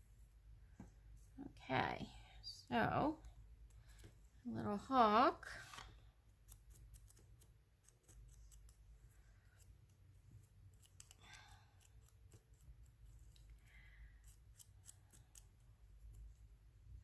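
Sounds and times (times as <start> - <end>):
scissors snipping paper: 6.4 - 9.9, 10.7 - 13.5, 14.2 - 16.3.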